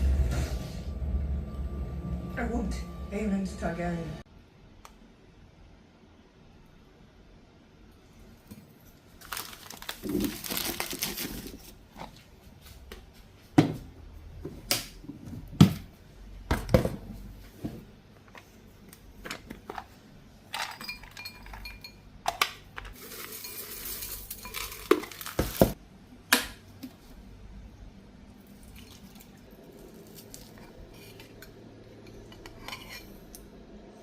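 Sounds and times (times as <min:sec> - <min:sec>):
dishes and cutlery clattering: 0:20.6 - 0:22.0.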